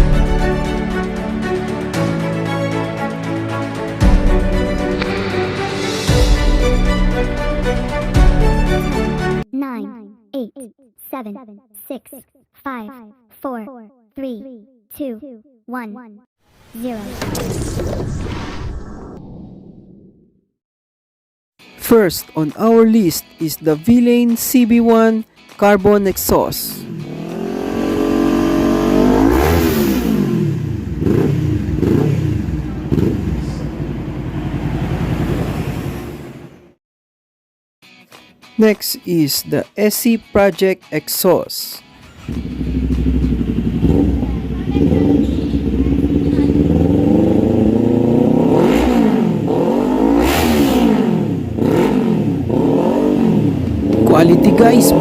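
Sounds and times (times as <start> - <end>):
motorcycle engine revving: 26.8 - 36.5, 42.1 - 55.0.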